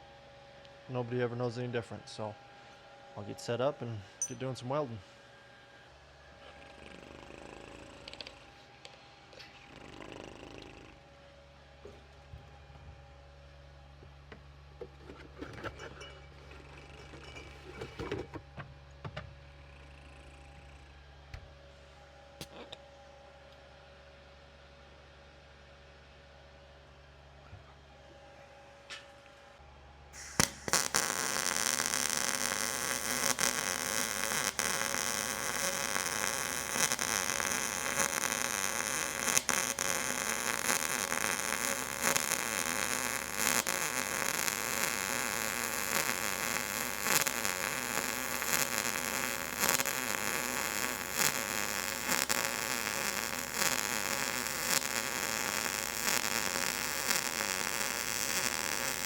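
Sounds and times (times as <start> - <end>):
welding arc crackling and hissing: 6.5 - 8.5, 30.2 - 59.0.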